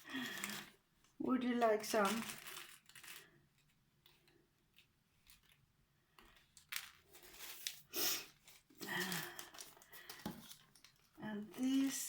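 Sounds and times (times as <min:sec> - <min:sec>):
plastic bag rustling: 0:00.0 - 0:00.8, 0:01.4 - 0:04.2, 0:06.3 - 0:12.0.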